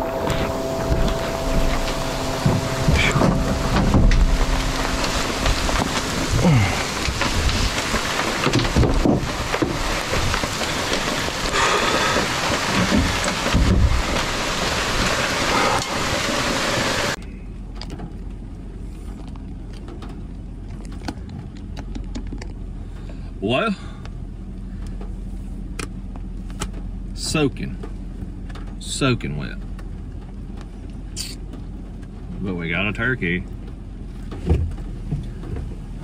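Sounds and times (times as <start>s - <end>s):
heavy rain falling: 0.0s - 17.2s
low thumps: 0.0s - 17.2s.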